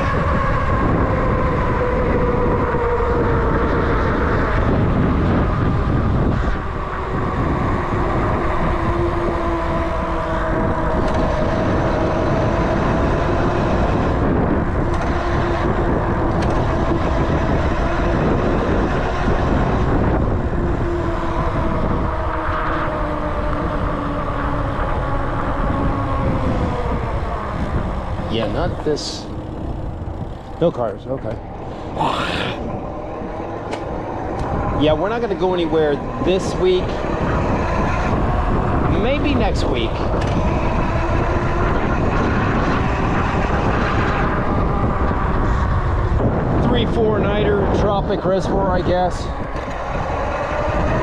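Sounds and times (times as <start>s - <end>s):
whining tones: 0.0s - 46.9s
vehicle rumble and rushing: 0.0s - 51.0s.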